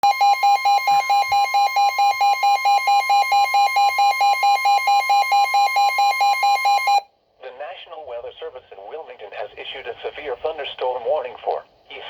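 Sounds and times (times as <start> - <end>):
rapid pulsing beep: 0.0 - 7.0
steady high alarm tone: 0.0 - 7.1.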